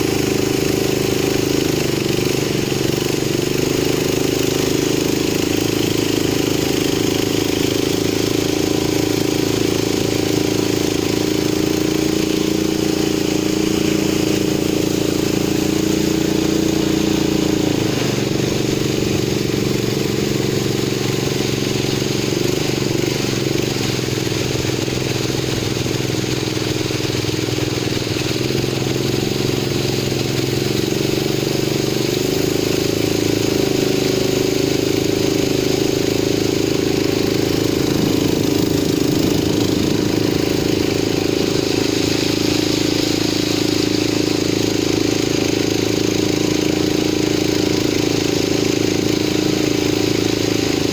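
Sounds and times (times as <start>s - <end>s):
boat engine running: 0.0s - 50.9s.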